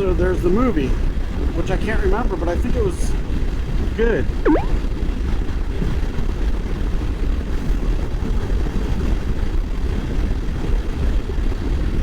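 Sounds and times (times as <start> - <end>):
wind rumble on microphone: 0.0 - 12.0.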